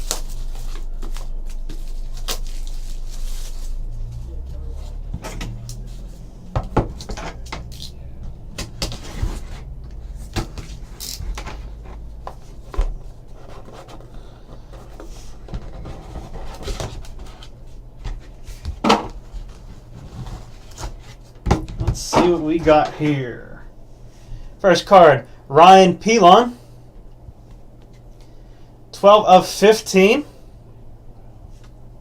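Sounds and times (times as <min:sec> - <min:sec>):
cards and wrapping crinkling: 0:00.0 - 0:04.3
low steady hum: 0:00.0 - 0:32.0.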